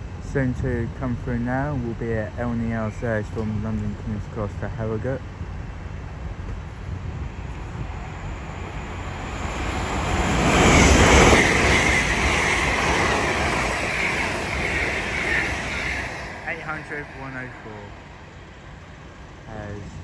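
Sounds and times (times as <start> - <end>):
express train passing at speed: 0.0 - 20.0
high whine: 5.6 - 19.9.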